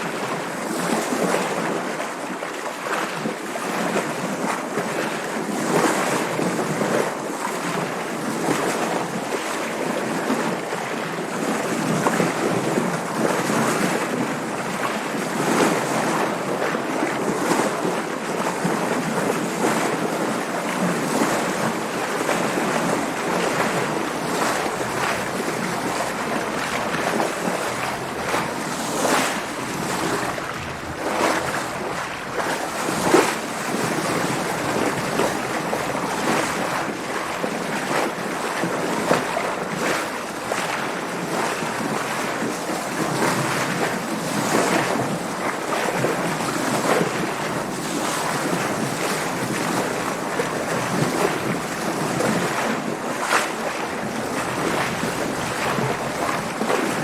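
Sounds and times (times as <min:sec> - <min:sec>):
sea water splashing against hull: 0:00.0 - 0:57.0
wind on microphone: 0:18.7 - 0:38.4.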